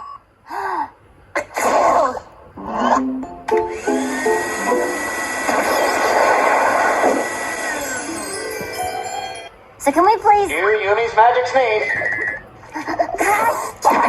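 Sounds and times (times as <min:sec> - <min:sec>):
cartoon character sneezing: 0:01.4 - 0:03.1
musical notes and held chord: 0:02.9 - 0:05.5.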